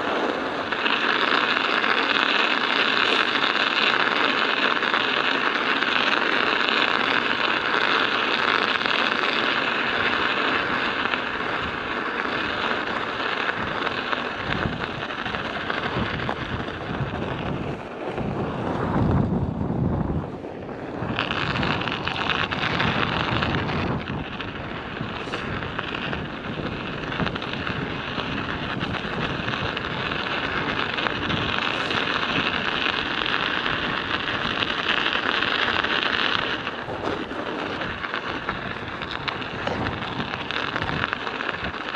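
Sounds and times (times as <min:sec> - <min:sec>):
studded tyres rattling on ice: 0:00.0 - 0:41.9
wind buffeting microphone: 0:00.0 - 0:41.9
low rumble: 0:36.3 - 0:41.2.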